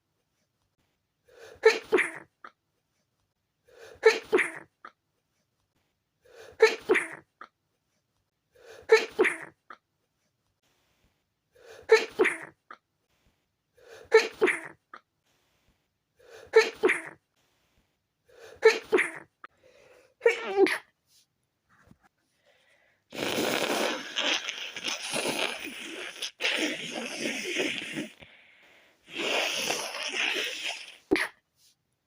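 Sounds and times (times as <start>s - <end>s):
stifled sneezes: 1.4s - 2.3s, 3.9s - 4.7s, 6.4s - 7.3s, 8.8s - 9.6s, 11.8s - 12.6s, 14.0s - 14.8s, 16.4s - 17.2s, 18.5s - 19.3s, 20.2s - 20.9s, 23.1s - 28.2s, 29.1s - 31.4s.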